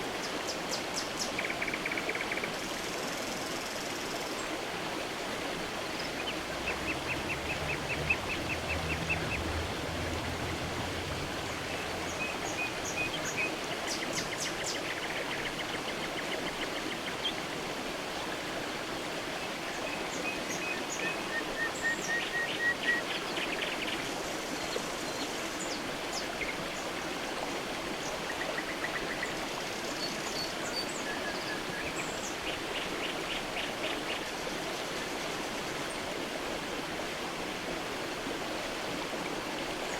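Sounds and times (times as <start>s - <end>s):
creek water running: 0.0s - 39.9s
low rumble: 6.5s - 12.8s.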